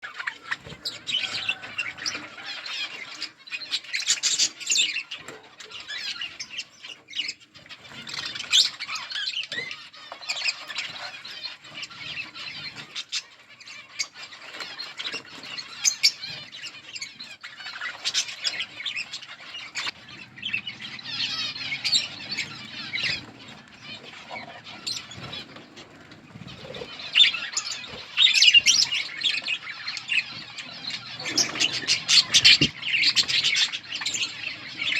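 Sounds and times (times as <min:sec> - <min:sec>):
budgerigars chirping and chattering: 0:00.0 - 0:34.9.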